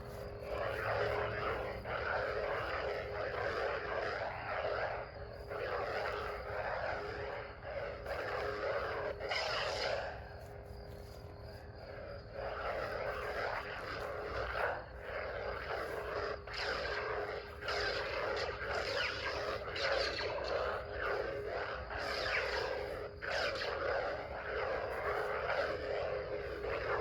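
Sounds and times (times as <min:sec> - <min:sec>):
lightsaber swing whooshes: 0:00.0 - 0:10.2, 0:12.4 - 0:27.0
lightsaber humming: 0:00.0 - 0:27.0.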